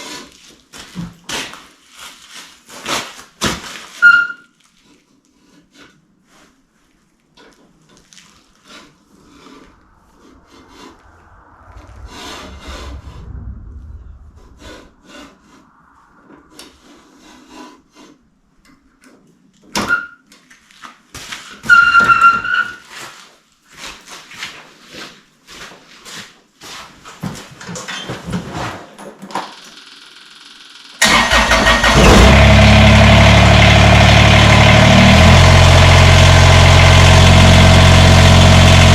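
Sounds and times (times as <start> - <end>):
tractor diesel engine running: 31.0 - 38.9.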